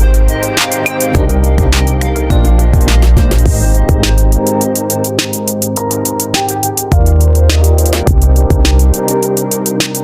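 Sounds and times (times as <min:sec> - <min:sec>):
deep bass: 0:01.2 - 0:04.4, 0:06.9 - 0:09.0.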